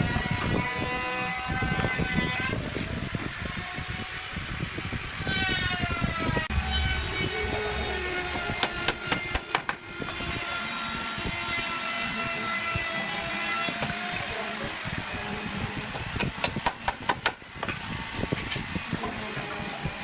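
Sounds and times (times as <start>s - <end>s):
sharp knocks: 6.5s - 10.2s.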